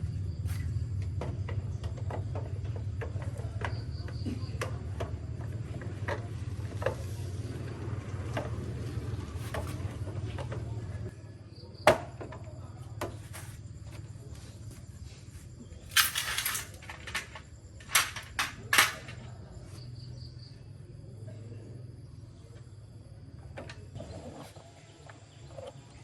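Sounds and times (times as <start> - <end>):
faint insect chirping: 0.0 - 26.0.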